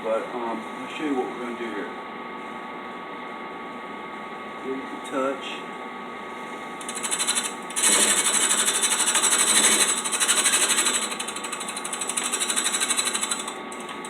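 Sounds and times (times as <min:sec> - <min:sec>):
drill press cutting metal: 0:06.8 - 0:14.0.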